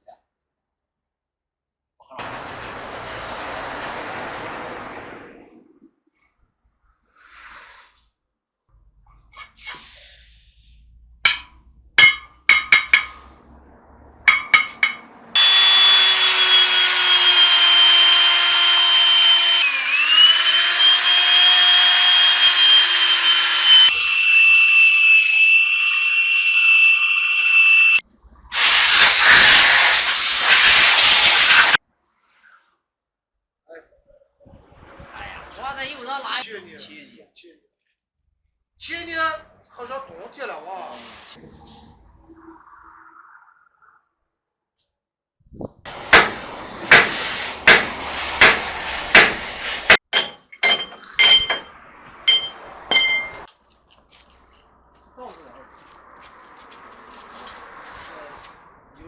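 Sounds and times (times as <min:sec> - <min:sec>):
hammer striking metal: 0:11.3 - 0:13.3, 0:14.3 - 0:16.0, 0:45.9 - 0:53.5
power tool whining: 0:14.3 - 0:31.8, 0:45.9 - 0:50.1
compressed air hiss: 0:28.5 - 0:31.8, 0:45.9 - 0:50.0.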